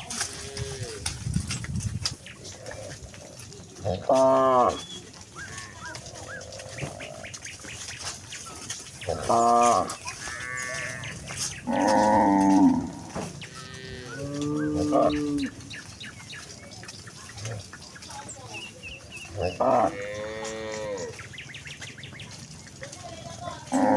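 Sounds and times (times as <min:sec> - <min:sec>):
cattle mooing: 0:03.8 - 0:07.4, 0:09.0 - 0:15.7, 0:19.3 - 0:21.2, 0:23.7 - 0:23.9.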